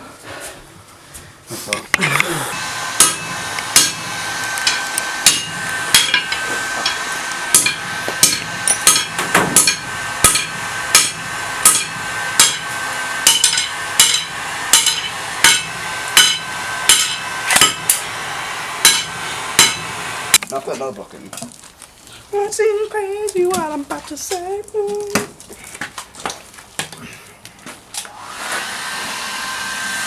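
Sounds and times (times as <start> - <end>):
steady high whine: 1.9 - 20.6
hammer striking metal: 2.9 - 18.1, 18.8 - 20.0.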